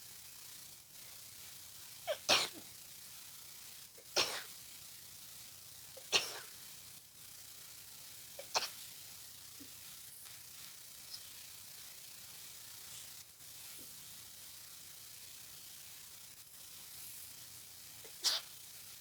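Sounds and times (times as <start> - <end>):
person sneezing: 2.1 - 2.6, 4.1 - 4.5, 6.0 - 6.5, 8.4 - 8.8, 18.1 - 18.5.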